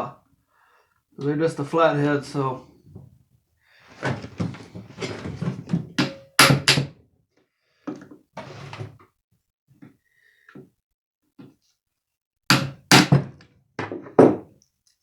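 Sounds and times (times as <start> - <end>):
hand tools set down on workbench: 4.0 - 6.9, 12.6 - 14.5.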